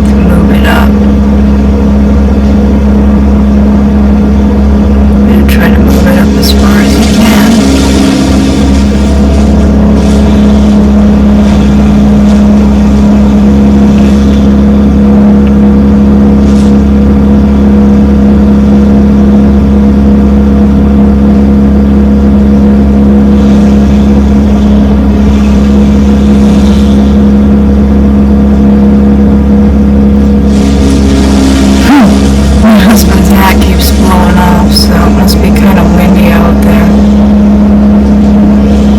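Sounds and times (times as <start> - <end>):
vehicle engine running steadily: 0.0 - 38.9.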